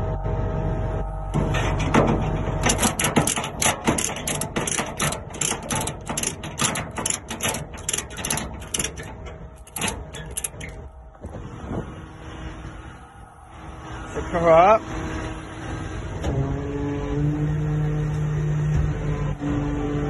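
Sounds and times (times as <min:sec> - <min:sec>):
low steady hum: 0:00.0 - 0:19.3
ratchet clicking: 0:01.7 - 0:10.8.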